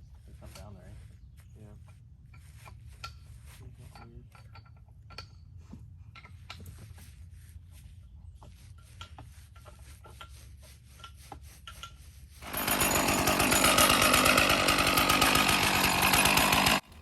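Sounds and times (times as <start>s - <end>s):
chainsaw cutting log: 12.4s - 17.0s.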